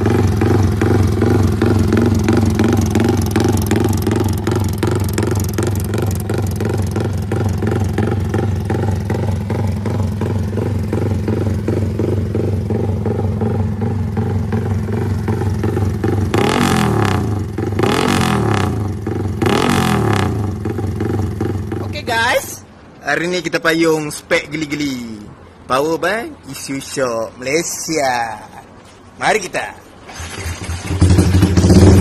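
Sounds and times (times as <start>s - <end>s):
motorcycle engine rumble idle: 0.0s - 16.4s
engine revving: 0.0s - 21.8s, 30.1s - 32.0s.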